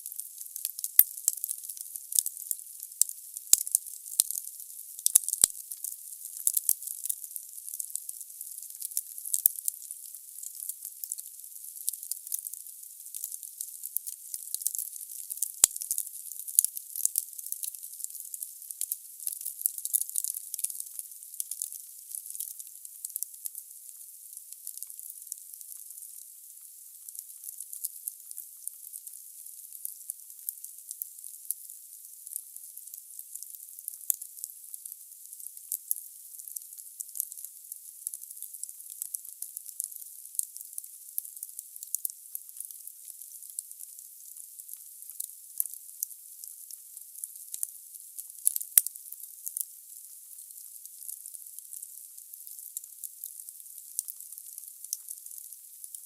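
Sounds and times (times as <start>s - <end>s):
wood fire crackling and popping: 0.0s - 8.0s, 8.6s - 9.8s, 10.4s - 14.8s, 18.4s - 23.3s, 48.5s - 48.9s.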